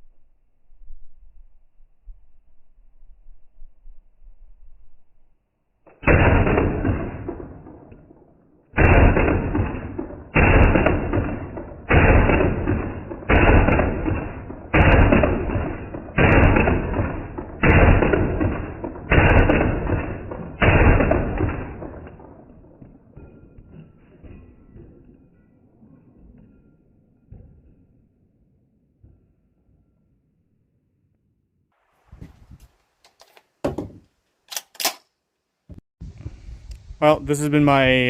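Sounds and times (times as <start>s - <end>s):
slowed-down gunshot booms: 5.9s - 28.2s.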